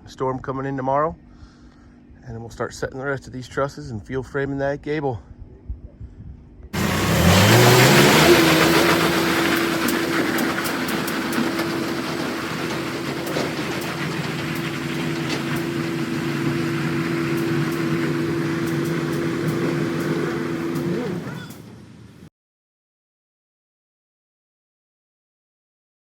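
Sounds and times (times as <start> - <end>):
motor spinning up: 6.8 - 21.8.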